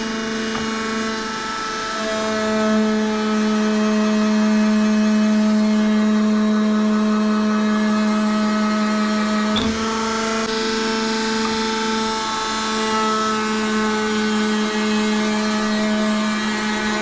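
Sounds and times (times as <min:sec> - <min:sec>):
machine motor humming: 0:08.7 - 0:17.0.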